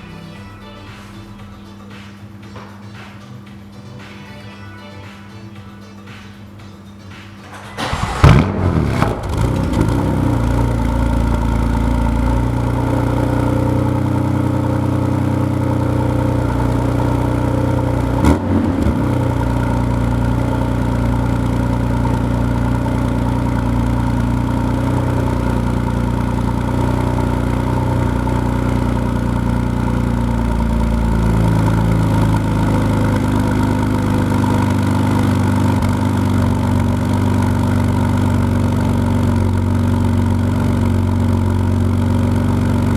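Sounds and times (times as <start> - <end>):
car engine idling: 7.4 - 42.9.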